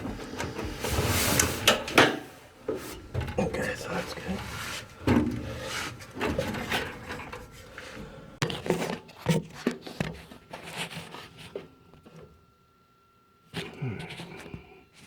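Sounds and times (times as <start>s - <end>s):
tools knocking and scraping: 0.0s - 8.1s.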